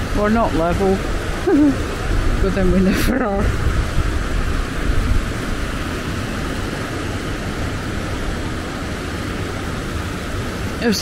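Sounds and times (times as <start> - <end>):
low rumble: 0.0 - 8.8
river rushing over rocks: 0.0 - 11.0.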